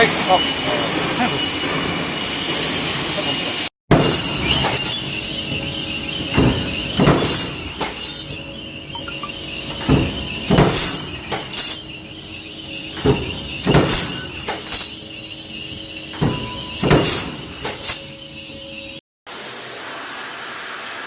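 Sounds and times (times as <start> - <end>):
machine metal clanking: 9.8 - 12.0, 13.0 - 15.0.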